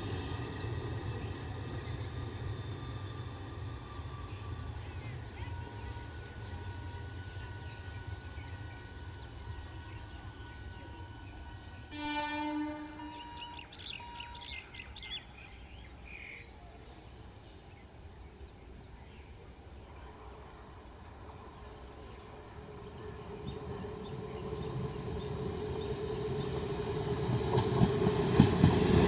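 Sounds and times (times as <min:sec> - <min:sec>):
approaching train rumble: 0:00.0 - 0:29.0
train horn blast: 0:05.4 - 0:14.7
birds chirping: 0:13.0 - 0:28.8.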